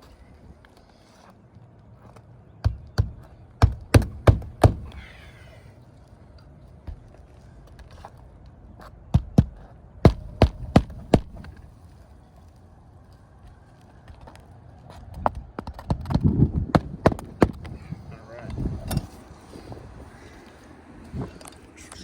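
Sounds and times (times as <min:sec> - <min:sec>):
hammer driving nails: 0:02.6 - 0:05.0, 0:09.2 - 0:11.5, 0:15.8 - 0:17.7.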